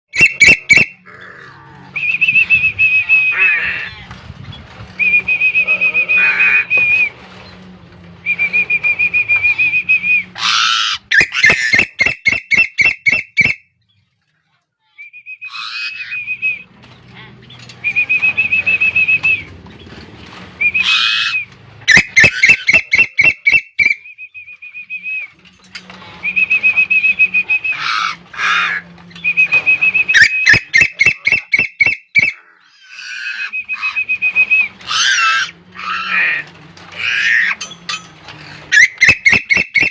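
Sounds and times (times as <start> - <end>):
bird sharp clicking notes: 11.1 - 13.6, 21.9 - 24.0, 38.8 - 39.9
songbird trilled whistle: 11.1 - 13.6, 21.9 - 25.2, 38.8 - 39.9.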